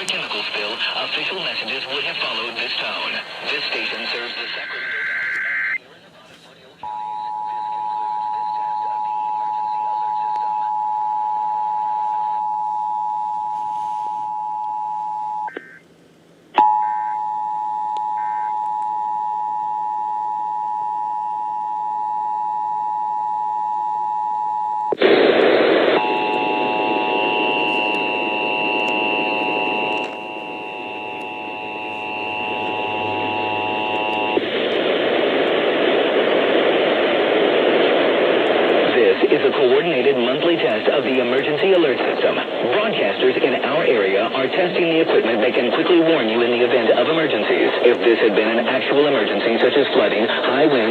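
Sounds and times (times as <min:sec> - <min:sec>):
alert tones over radio static: 0:00.0 - 0:06.0, 0:24.9 - 0:50.9.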